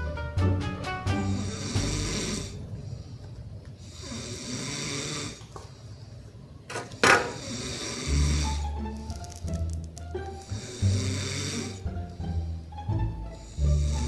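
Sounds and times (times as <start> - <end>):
person snoring: 1.1 - 3.1, 3.8 - 5.5, 7.2 - 9.0, 10.3 - 14.0.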